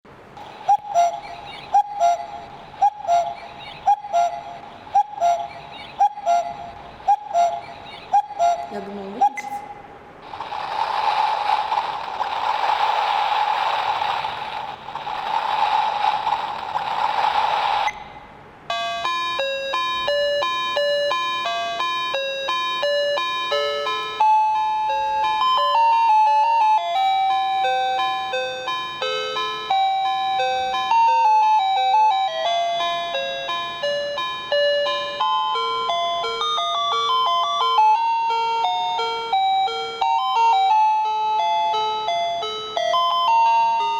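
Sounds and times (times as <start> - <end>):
hissing noise-like track: 0.1 - 19.0
electronic chime-like melody: 0.4 - 9.6, 18.7 - 43.9.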